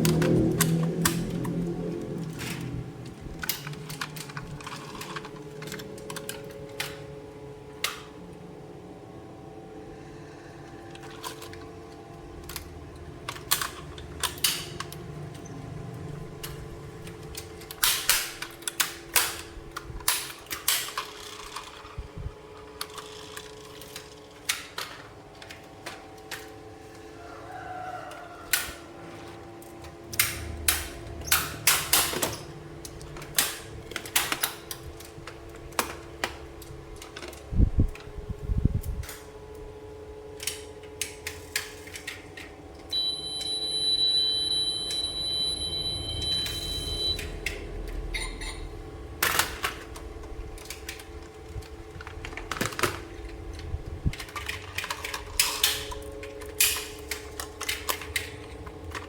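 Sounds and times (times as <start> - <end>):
steady high electronic tone: 42.9 - 47.2.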